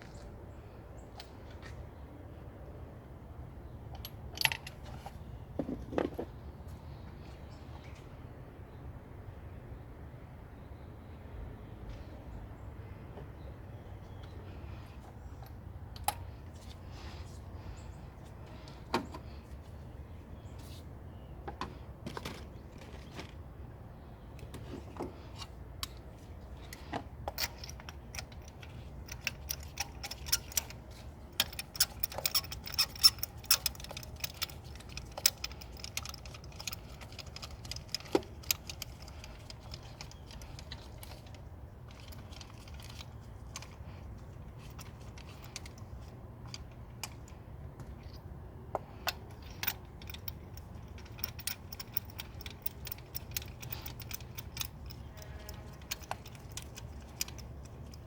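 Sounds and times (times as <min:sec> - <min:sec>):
low steady hum: 0:00.0 - 0:58.0
metallic clicks of hand tools: 0:26.7 - 0:43.9, 0:48.0 - 0:58.0.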